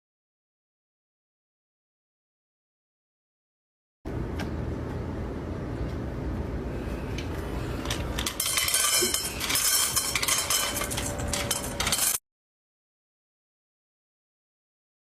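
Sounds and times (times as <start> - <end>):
hard objects clattering and clinking: 7.6 - 12.2.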